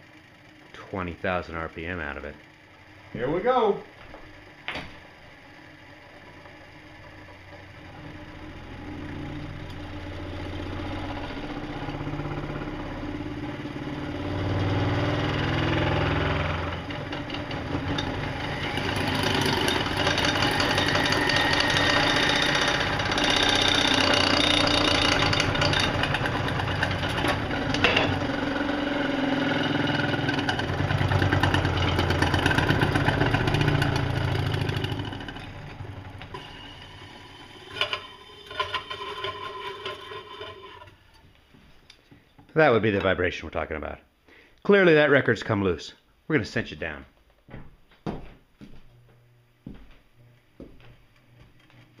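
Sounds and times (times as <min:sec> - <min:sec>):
electric motor spinning record: 0:00.0 - 0:41.3
dense rattle: 0:19.0 - 0:28.2.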